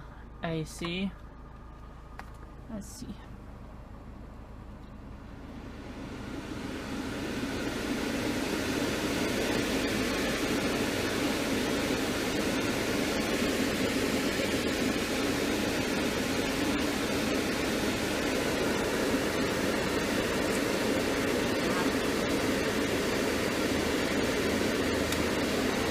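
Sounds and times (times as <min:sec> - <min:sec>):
blower fan rushing air: 0:00.0 - 0:25.9.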